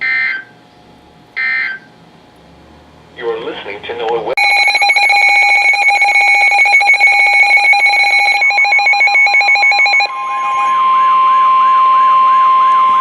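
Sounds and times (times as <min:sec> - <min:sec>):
steady warning alarm tone: 0:01.4 - 0:01.9, 0:04.4 - 0:13.0
repeating warble: 0:04.4 - 0:11.6
pulsing multi-tone ringing: 0:04.4 - 0:13.0.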